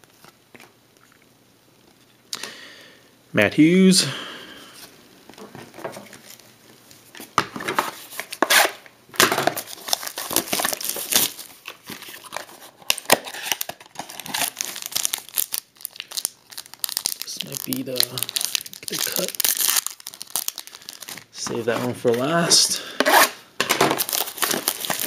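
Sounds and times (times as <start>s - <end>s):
packaging crinkling and tearing: 5.4s - 22.3s, 23.0s - 25.0s.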